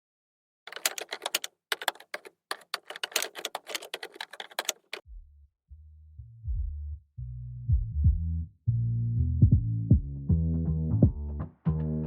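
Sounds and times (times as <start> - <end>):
rapid irregular clicking: 0.7 - 5.0.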